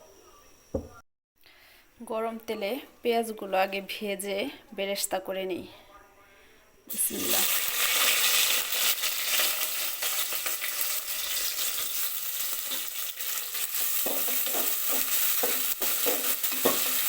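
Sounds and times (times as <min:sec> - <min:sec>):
onions sizzling in hot oil: 0:06.9 - 0:17.0.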